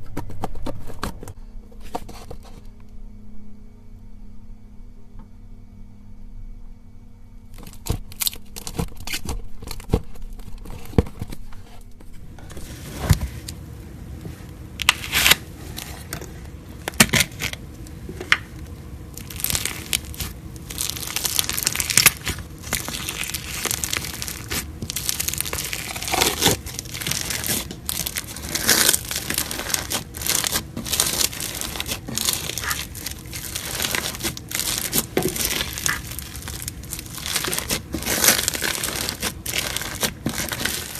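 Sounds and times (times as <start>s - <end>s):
slime squished by hand: 14.8s - 40.9s.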